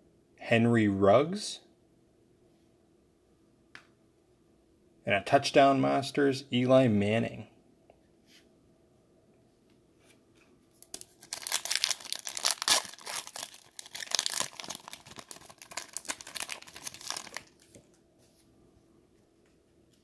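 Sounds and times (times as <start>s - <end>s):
foil wrapper tearing and crinkling: 10.8s - 17.8s.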